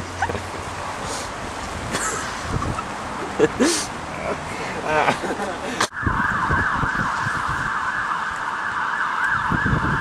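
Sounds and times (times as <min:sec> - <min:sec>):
emergency vehicle siren: 0:05.9 - 0:10.0.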